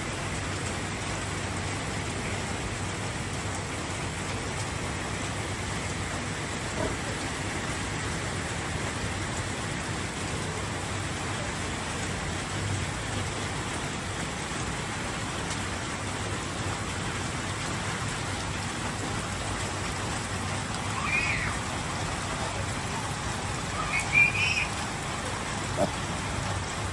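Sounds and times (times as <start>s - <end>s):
heavy rain falling: 0.0s - 26.9s.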